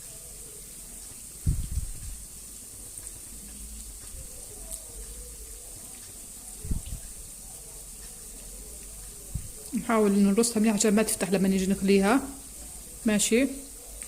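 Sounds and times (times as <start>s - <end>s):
food frying in hot oil: 0.0s - 14.0s
dull low thumps: 1.4s - 2.3s, 6.6s - 7.0s, 9.3s - 9.6s.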